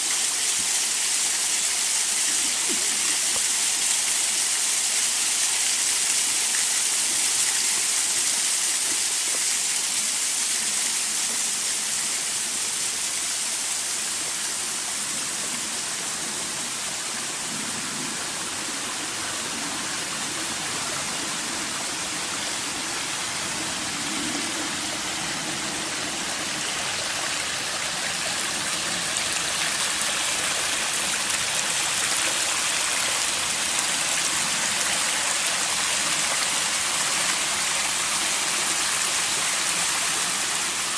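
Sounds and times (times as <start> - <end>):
water rushing: 16.1 - 40.9.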